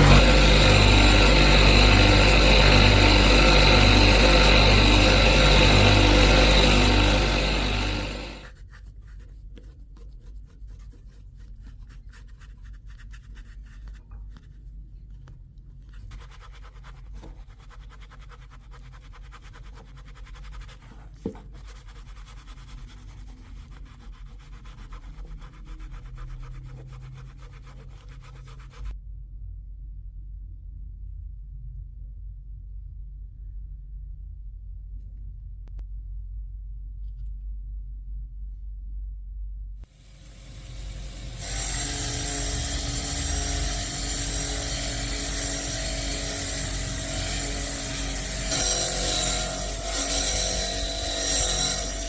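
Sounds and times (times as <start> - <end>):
power tool motor winding down: 0.0 - 8.5
hand sanding scraping: 0.0 - 14.4, 15.9 - 28.9.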